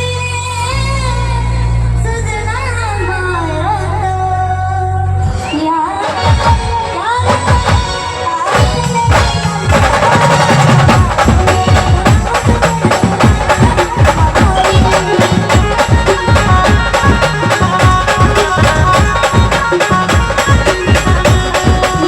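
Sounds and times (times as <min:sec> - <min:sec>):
brass band playing: 0:06.0 - 0:14.0
drums beating fast rhythm: 0:06.0 - 0:22.0.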